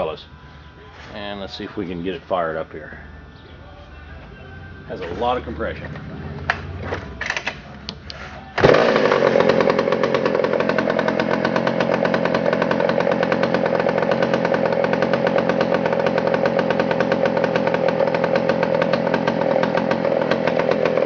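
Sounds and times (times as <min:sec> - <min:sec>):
chainsaw engine running: 0:08.6 - 0:21.0.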